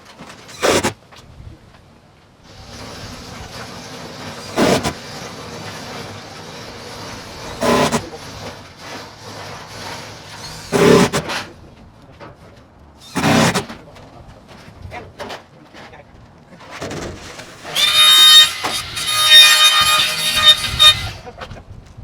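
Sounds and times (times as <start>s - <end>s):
power tool bursts: 2.5s - 8.1s, 8.8s - 11.2s, 13.0s - 13.7s, 17.4s - 21.3s.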